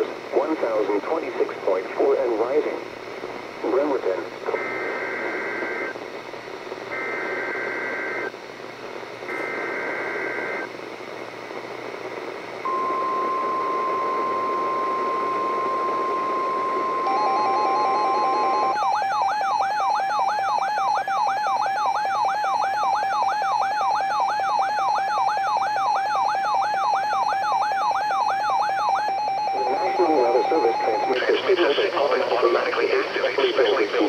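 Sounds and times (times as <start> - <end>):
radio static hiss: 0.0 - 18.8, 29.5 - 34.0
steady warning alarm tone: 6.9 - 8.3, 12.6 - 31.2
fast beeping tone: 12.7 - 31.2.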